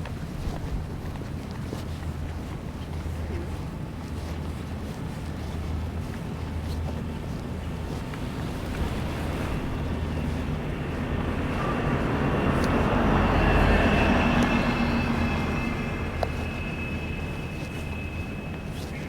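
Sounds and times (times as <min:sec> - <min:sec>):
large vehicle passing by: 0:06.6 - 0:19.0
steady high whine: 0:07.0 - 0:19.0.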